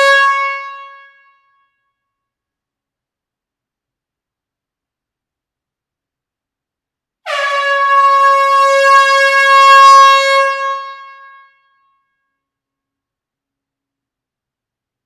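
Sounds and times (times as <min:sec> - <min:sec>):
air horn blast: 0:07.3 - 0:11.6.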